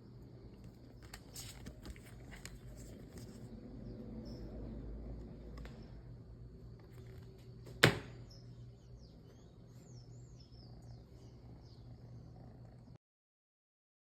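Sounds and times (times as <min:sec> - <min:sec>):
low steady hum: 0:00.0 - 0:13.0
faint high bird chirps: 0:08.1 - 0:13.0.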